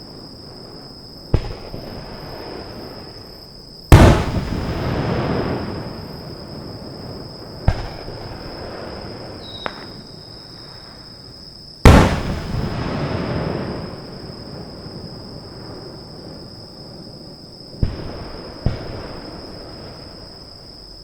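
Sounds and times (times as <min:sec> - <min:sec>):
fireworks bursting: 0:00.0 - 0:16.0, 0:17.7 - 0:20.7
loud bangs with echo: 0:03.9 - 0:04.8, 0:11.8 - 0:13.0.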